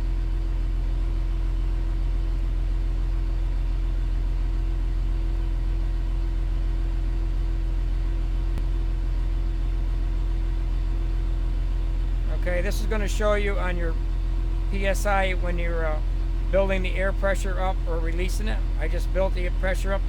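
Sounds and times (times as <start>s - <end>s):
constant hum: 0.0s - 20.0s
diesel engine idling: 0.0s - 20.0s.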